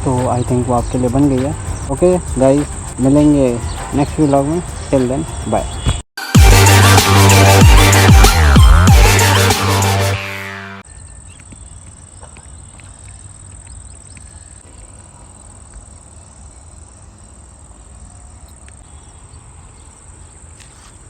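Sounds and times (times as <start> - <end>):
high-pitched insect trill: 0.0 - 6.0.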